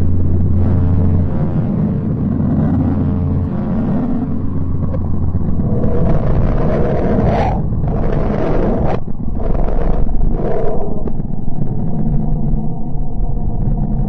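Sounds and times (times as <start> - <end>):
deep rumbling drone: 0.0 - 14.0
hissing swells: 3.4 - 11.3.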